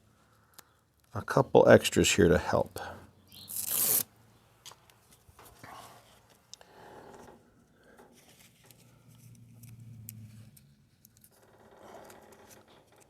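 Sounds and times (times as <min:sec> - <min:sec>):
velcro rustling and scratching: 0:03.4 - 0:04.1.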